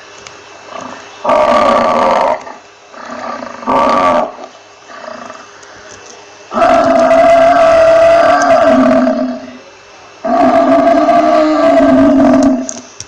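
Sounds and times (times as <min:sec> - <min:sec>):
buffalo bellowing: 0:00.7 - 0:05.4.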